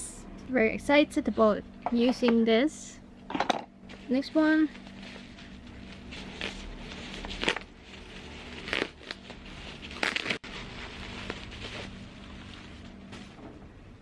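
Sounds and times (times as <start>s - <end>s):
packaging crinkling and rustling: 4.8s - 13.3s.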